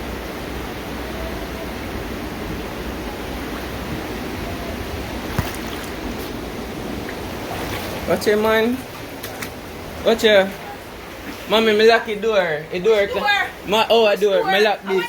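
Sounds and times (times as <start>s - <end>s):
floodwater rushing: 0.0s - 15.0s.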